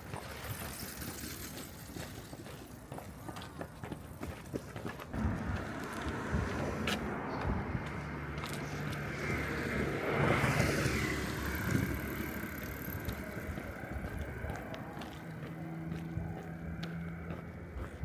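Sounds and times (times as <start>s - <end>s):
street noise: 0.0s - 18.0s
car passing close by: 5.2s - 18.0s.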